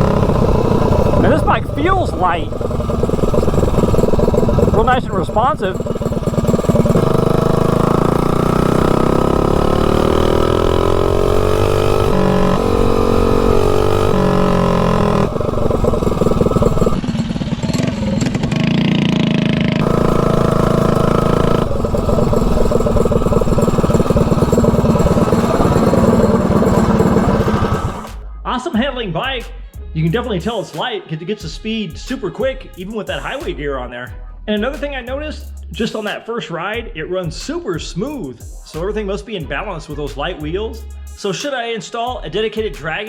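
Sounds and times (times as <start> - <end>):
mini bike engine accelerating: 0.0 - 28.2.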